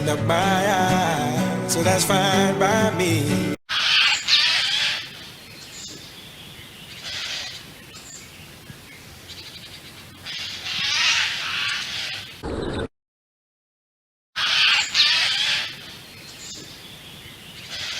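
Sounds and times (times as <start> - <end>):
jay screeching: 3.7 - 5.1, 14.4 - 15.8.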